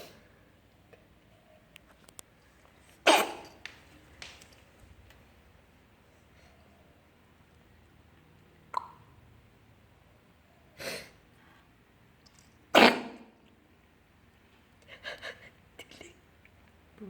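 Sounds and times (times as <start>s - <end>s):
cat coughing: 3.1s - 3.6s, 12.8s - 13.3s.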